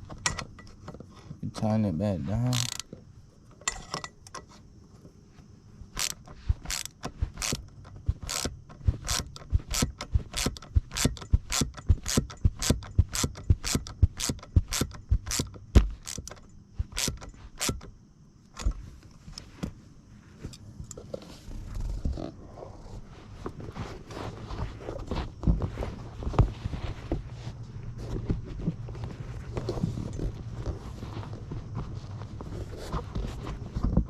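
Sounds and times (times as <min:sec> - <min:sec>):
ratchet wrench clicking: 0:02.5 - 0:02.9, 0:06.0 - 0:17.9.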